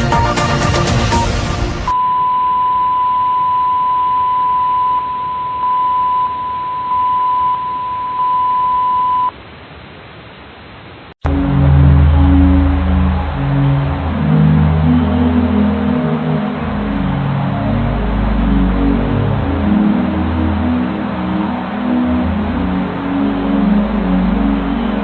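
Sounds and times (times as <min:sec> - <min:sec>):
electronic music: 0:00.0 - 0:02.0, 0:11.2 - 0:25.0.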